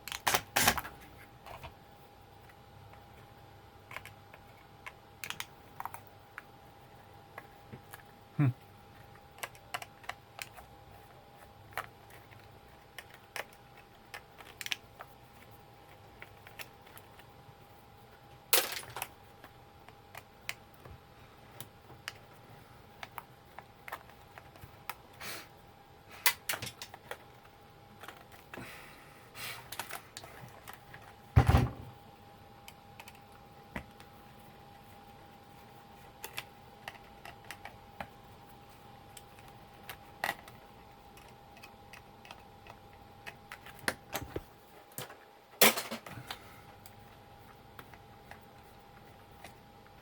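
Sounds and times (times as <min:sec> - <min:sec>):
plastic and metal parts clicking: 0:11.7 - 0:15.1.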